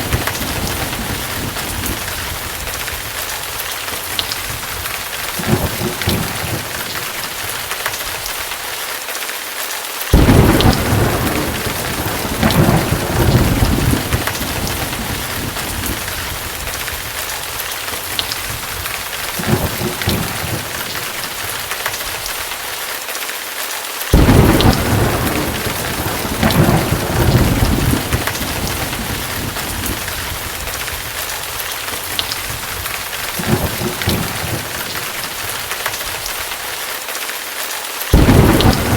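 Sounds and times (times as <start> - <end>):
thunder rumbling: 0.0 - 7.6, 10.1 - 22.2, 24.1 - 36.4, 38.1 - 38.9
steady rain: 0.0 - 38.9.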